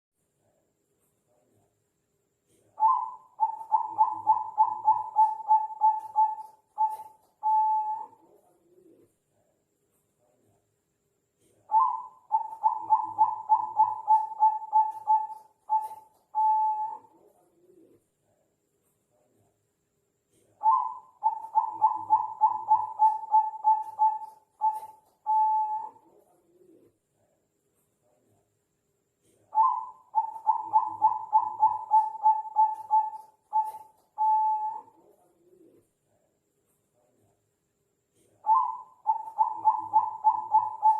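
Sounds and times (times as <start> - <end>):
dove cooing: 2.8 - 9.0, 11.7 - 17.9, 20.6 - 26.9, 29.5 - 35.8, 38.4 - 40.9.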